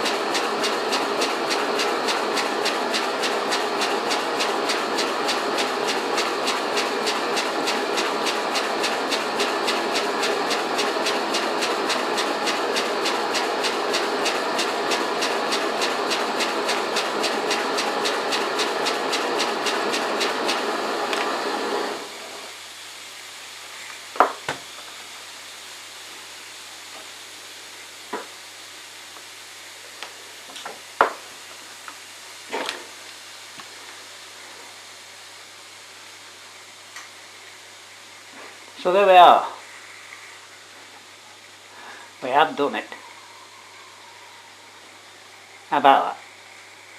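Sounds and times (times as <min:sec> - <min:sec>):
steam engine chuffing: 0:00.0 - 0:22.4
faint hiss: 0:21.9 - 0:46.9.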